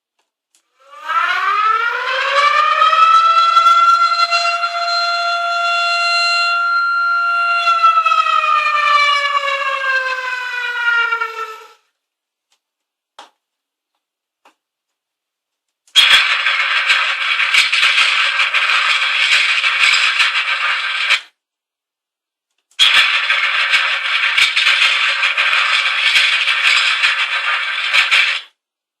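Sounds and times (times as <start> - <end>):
siren wailing: 0.8 - 11.9, 22.8 - 28.4
dense crackling noise: 15.8 - 21.5, 22.6 - 28.6.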